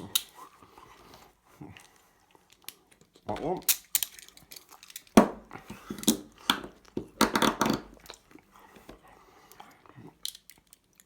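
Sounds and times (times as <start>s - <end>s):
lock picking metal clicks: 3.6s - 5.2s.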